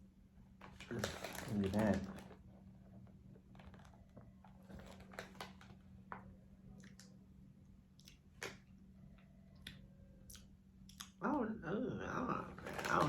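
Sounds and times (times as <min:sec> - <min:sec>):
low steady hum: 0:00.0 - 0:13.0
person eating cookie crunches: 0:00.7 - 0:02.3.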